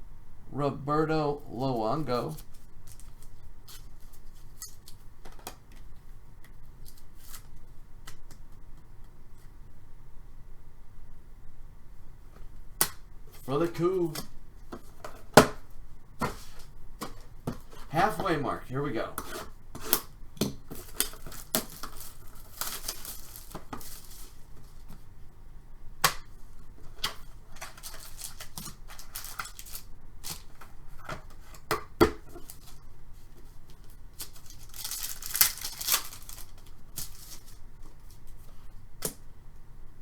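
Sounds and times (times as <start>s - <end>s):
card wrappers tearing: 20.7s - 24.4s, 26.9s - 30.6s, 34.1s - 37.6s.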